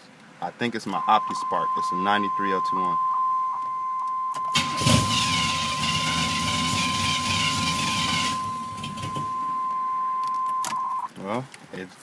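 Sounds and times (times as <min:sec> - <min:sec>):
steady high-pitched tone: 0:00.9 - 0:11.1
car engine cranking and running: 0:04.4 - 0:09.5.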